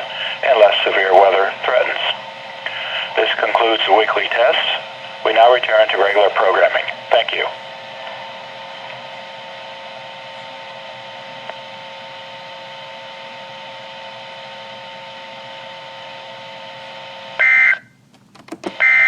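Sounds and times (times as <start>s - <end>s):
radio hiss: 0.0s - 11.7s.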